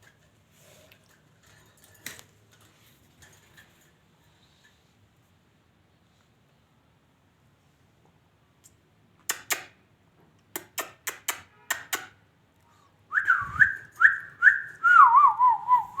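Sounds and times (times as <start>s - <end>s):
lovebird whistling: 13.1s - 16.0s.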